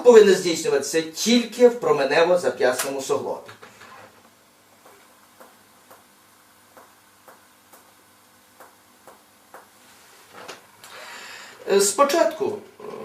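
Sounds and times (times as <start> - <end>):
finger tapping on skin: 6.8 - 7.9, 8.6 - 9.7.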